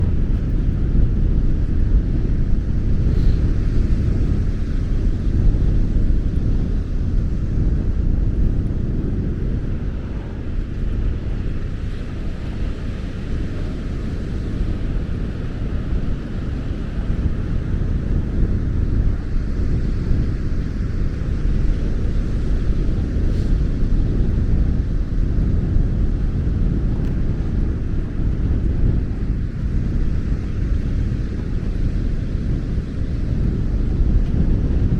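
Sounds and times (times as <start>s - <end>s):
wind buffeting microphone: 0.0s - 34.9s.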